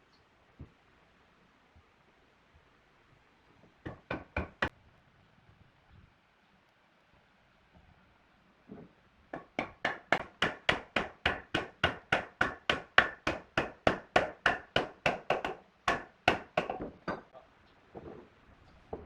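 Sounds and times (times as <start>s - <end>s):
hammer striking wood: 3.8s - 4.7s, 8.7s - 17.3s.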